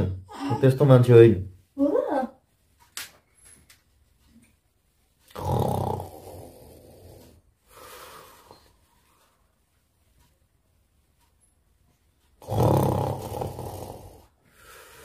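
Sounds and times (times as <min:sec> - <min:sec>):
man snoring: 0:05.3 - 0:07.4, 0:12.4 - 0:14.3.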